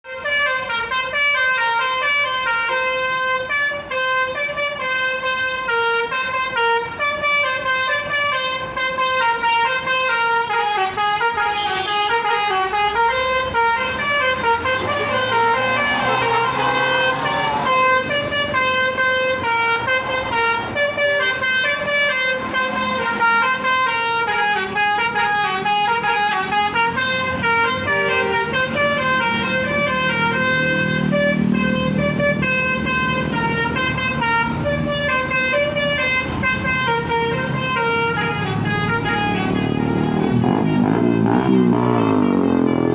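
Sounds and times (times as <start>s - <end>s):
bus horn playing a tune: 0.0s - 42.9s.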